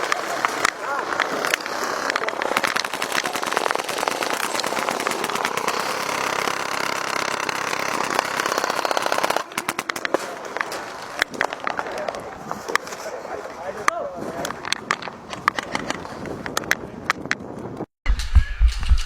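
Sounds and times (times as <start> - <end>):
airsoft gunfire: 0.0 - 11.9.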